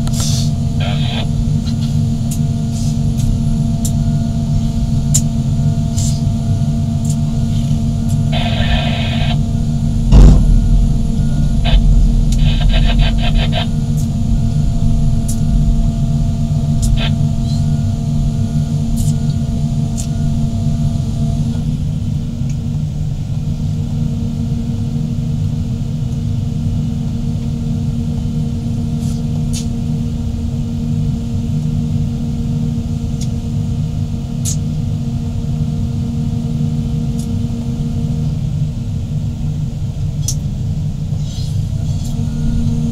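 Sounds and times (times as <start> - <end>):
excavator diesel engines rumbling: 0.0 - 24.0, 40.0 - 42.9
sharp knock: 10.1 - 10.7.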